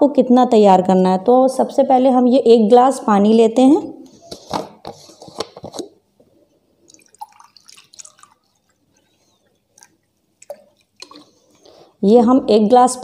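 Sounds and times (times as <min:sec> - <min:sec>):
glass clicks and water drips: 0:09.8 - 0:11.3.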